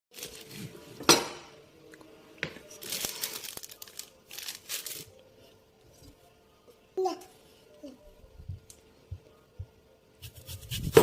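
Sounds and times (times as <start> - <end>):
crinkling rustling handling noises: 0.1 - 0.9, 2.6 - 6.1.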